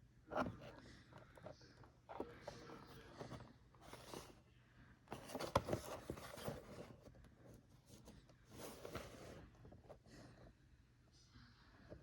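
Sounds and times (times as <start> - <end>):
cardboard and plastic rustling: 2.1 - 4.4, 5.1 - 10.2.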